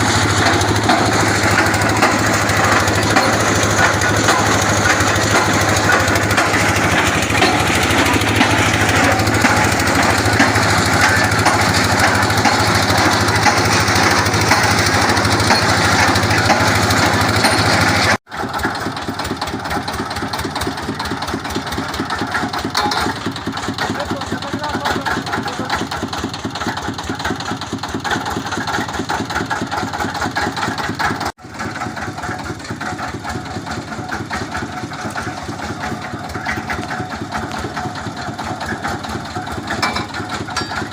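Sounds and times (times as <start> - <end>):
well boring machine engine knocking: 0.0 - 40.9.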